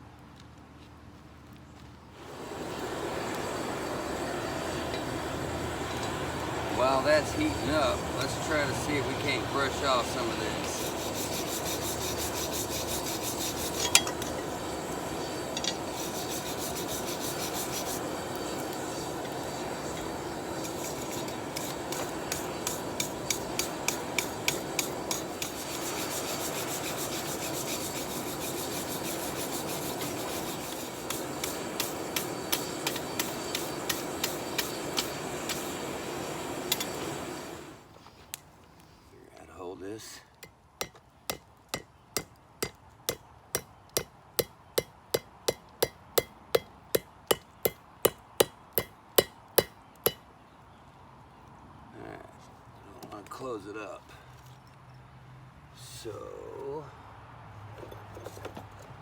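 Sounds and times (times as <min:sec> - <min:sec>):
wire brush scrubbing steel: 0:06.7 - 0:37.4.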